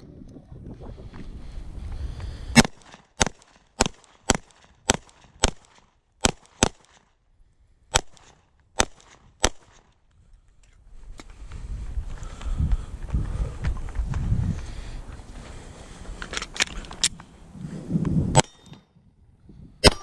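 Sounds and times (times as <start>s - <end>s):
semi-automatic gunshots: 2.6s - 7.0s, 7.9s - 9.8s.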